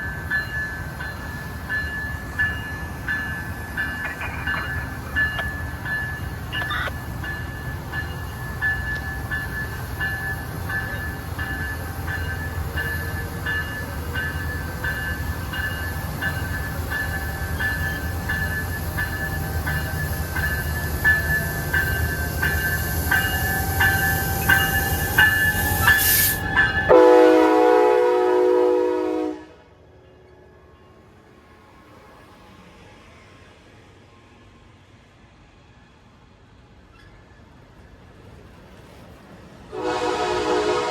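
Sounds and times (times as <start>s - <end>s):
train rumbling past: 0.0s - 40.9s
multi-chime train horn: 10.8s - 31.0s, 39.7s - 40.9s.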